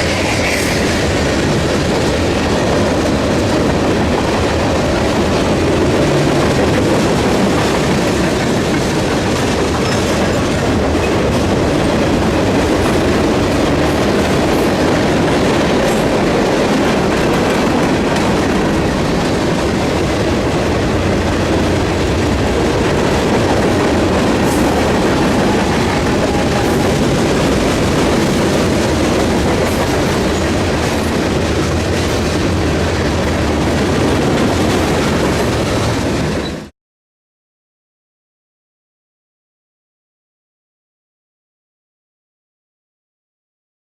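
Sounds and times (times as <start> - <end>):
train wheels clattering on rails: 0.0 - 36.7.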